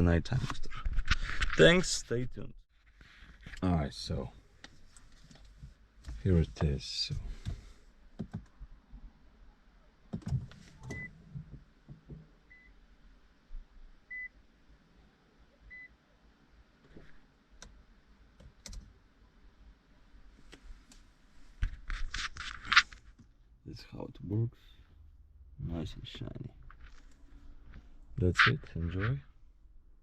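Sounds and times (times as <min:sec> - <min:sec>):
car warning chime beeps: 0:10.9 - 0:11.1.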